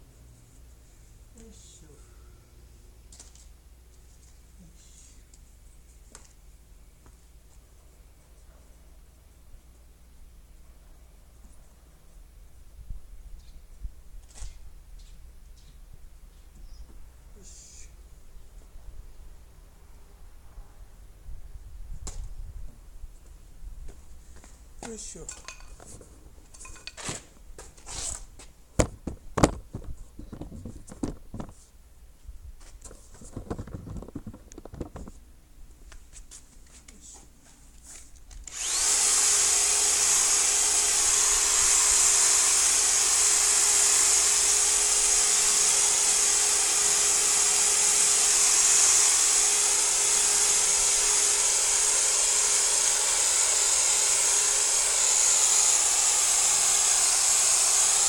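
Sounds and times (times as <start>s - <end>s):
handling knocks and clicks: 25.2s - 27.8s, 28.8s - 31.6s, 32.7s - 35.2s
electric car polisher whirring: 38.5s - 58.0s.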